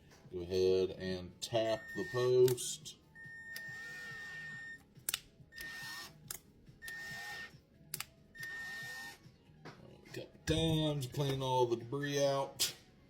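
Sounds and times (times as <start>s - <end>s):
electric drill motor whining: 3.2s - 4.8s, 5.5s - 6.2s, 6.8s - 7.6s, 8.4s - 9.2s.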